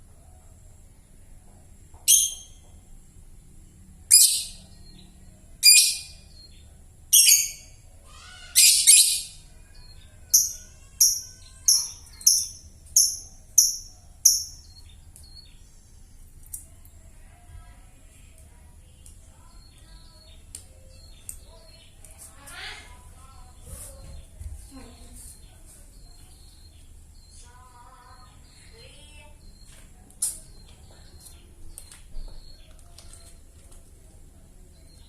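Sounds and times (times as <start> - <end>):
lovebird chirping: 2.0 - 2.6, 4.1 - 7.8, 8.6 - 15.7.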